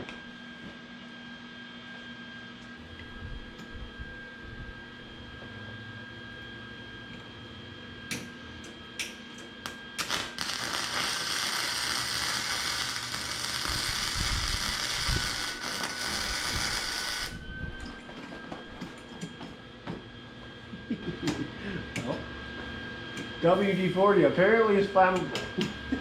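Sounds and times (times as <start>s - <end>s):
welding arc crackling: 9.6s - 17.4s.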